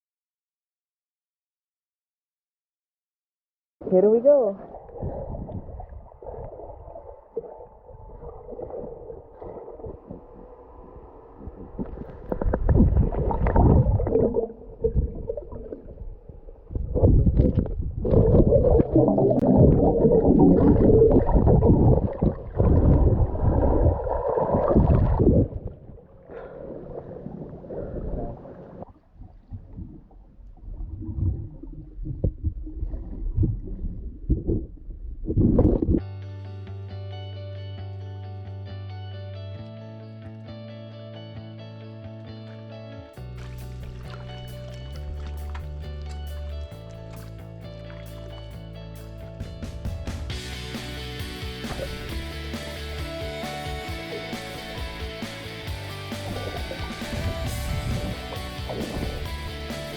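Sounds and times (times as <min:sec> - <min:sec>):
water bubbling underwater: 0:04.5 - 0:36.0, 0:50.0 - 0:59.9.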